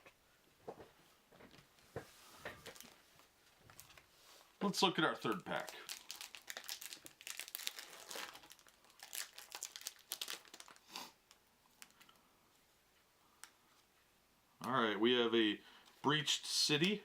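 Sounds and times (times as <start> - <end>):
wrapper crinkling and tearing: 2.6 - 3.0, 3.7 - 4.1, 4.8 - 12.2.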